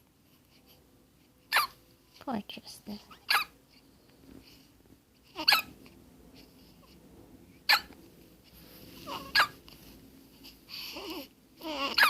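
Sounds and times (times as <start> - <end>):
squeaky hiccups: 1.5 - 1.8, 3.2 - 3.5, 5.3 - 5.7, 7.7 - 7.9, 9.1 - 9.6, 11.1 - 12.0.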